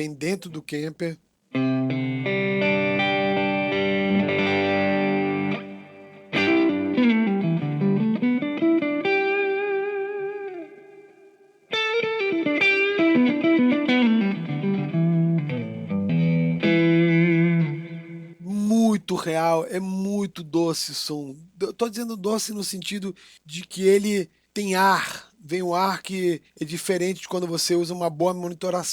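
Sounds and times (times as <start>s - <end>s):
clean electric guitar: 1.5s - 18.4s.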